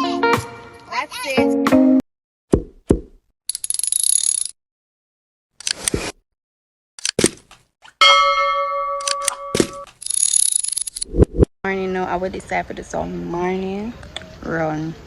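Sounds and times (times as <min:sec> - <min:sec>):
bell-like chime: 0:08.0 - 0:09.9.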